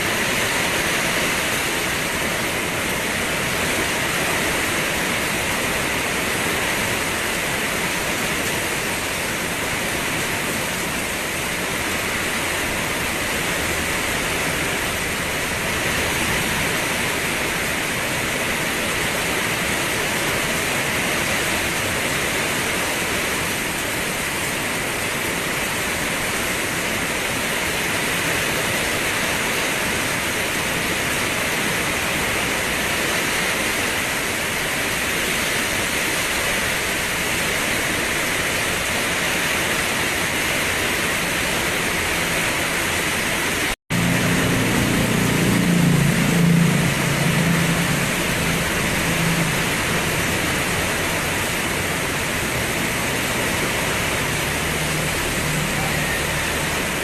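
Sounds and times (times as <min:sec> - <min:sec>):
steady rain falling: 0:00.0 - 0:57.0
low rumble: 0:43.9 - 0:57.0.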